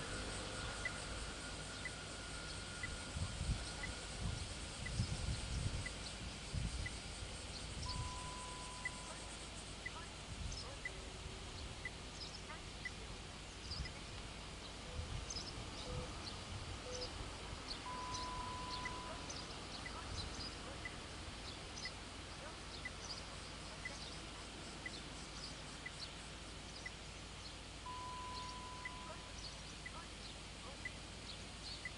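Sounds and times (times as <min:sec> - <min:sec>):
wind rumbling on microphone: 0:00.0 - 0:21.9
small birds chirping: 0:00.0 - 0:31.9
whistle-like notes: 0:07.9 - 0:09.1, 0:17.9 - 0:19.2, 0:27.9 - 0:29.3.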